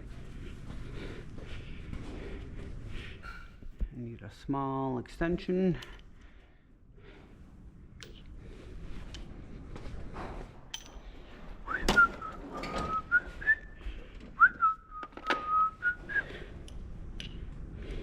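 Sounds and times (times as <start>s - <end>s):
man whistling a tune: 11.7s - 13.8s, 14.4s - 16.4s.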